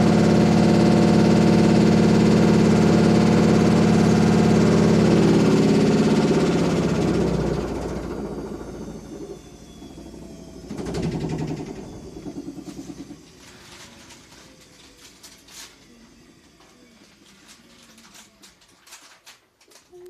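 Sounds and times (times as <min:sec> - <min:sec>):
washing machine throbbing: 0:00.0 - 0:18.9.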